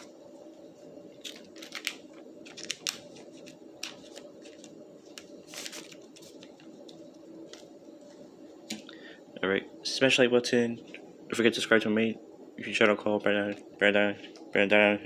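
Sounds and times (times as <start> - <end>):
steady low hum: 0.0 - 15.0
cards and packaging rustling: 1.2 - 8.0.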